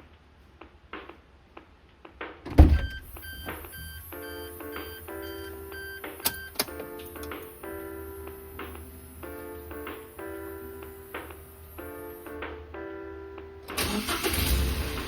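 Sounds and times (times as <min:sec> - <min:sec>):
loud thump: 0:02.5 - 0:03.0
steady high hiss: 0:03.1 - 0:13.2.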